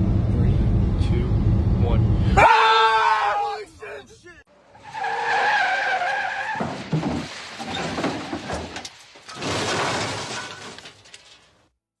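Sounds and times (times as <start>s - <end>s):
debris clattering: 4.7s - 11.7s
glass shattering: 5.3s - 11.6s
car crash impact: 5.8s - 11.6s.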